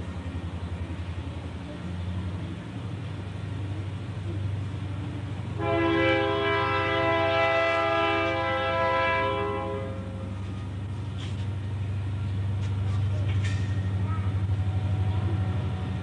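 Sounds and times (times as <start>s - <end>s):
horn blast: 5.6s - 10.2s.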